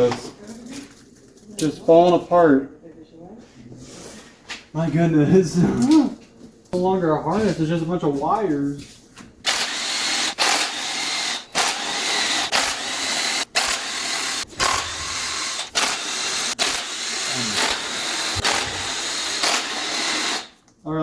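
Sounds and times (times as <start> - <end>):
power tool running in bursts: 9.5 - 20.6.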